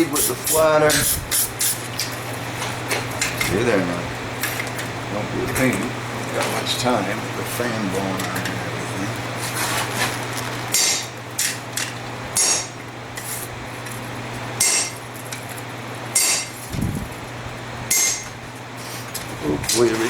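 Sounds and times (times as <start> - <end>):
shop fan humming: 0.0 - 20.0
hammer striking steel with ring: 10.8 - 11.1, 12.4 - 12.8, 14.6 - 15.0, 16.2 - 16.6, 17.9 - 18.3.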